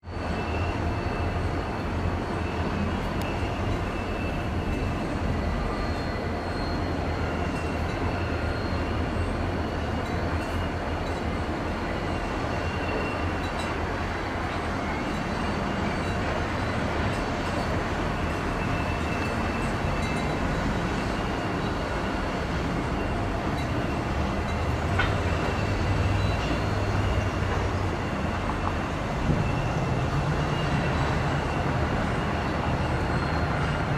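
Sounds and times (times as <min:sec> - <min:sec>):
diesel locomotives rumbling: 0:00.0 - 0:33.9.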